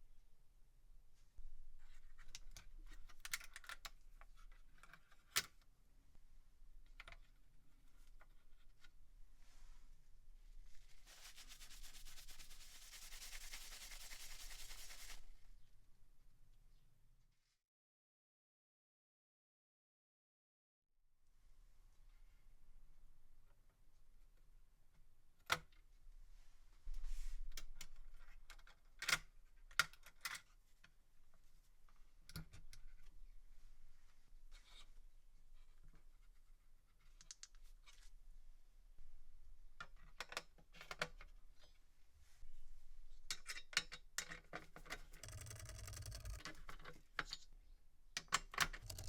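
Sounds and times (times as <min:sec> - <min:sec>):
rubbing strokes on hard surface: 0:10.7 - 0:15.4.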